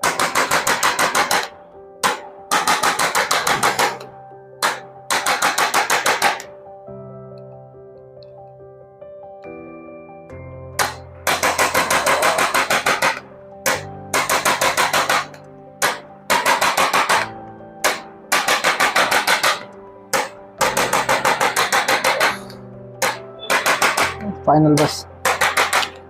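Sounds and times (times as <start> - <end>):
rapid sharp tapping: 0.0 - 4.0, 10.8 - 22.4, 23.0 - 24.2, 24.8 - 26.0
soft background music: 0.0 - 26.0.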